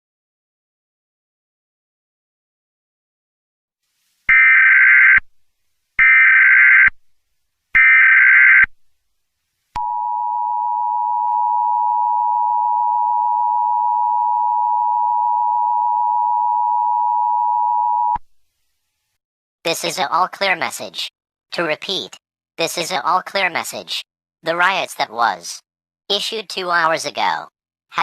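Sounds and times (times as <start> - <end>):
steady attention tone: 9.8 - 18.2.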